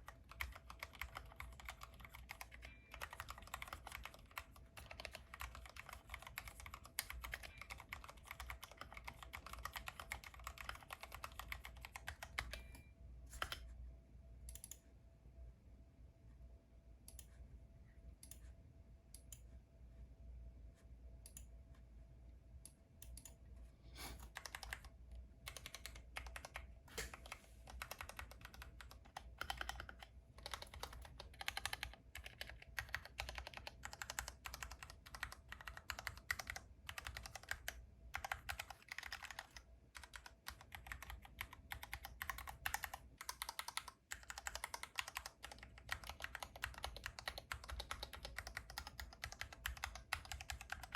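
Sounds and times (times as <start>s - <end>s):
mechanical keyboard typing: 0.0s - 13.6s, 24.2s - 50.9s.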